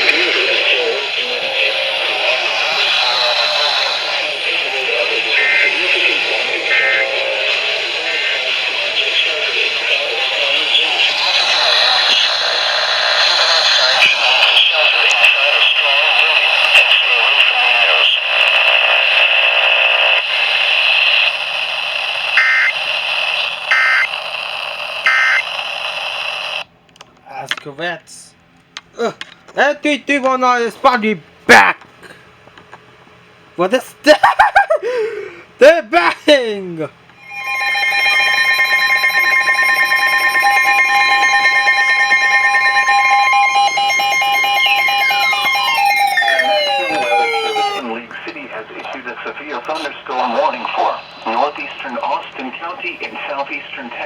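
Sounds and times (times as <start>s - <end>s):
radio hiss: 0.0s - 26.7s, 37.2s - 54.0s
two-tone alarm: 22.4s - 25.6s, 37.2s - 47.9s
warbling data burst beeps: 37.2s - 47.8s
falling tones: 37.2s - 47.9s.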